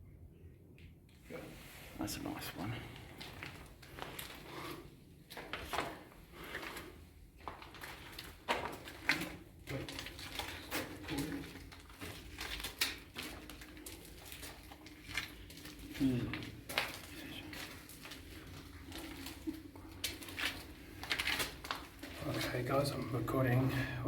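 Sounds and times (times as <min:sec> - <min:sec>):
clicks knocks and scuffs: 0:03.1 - 0:23.1.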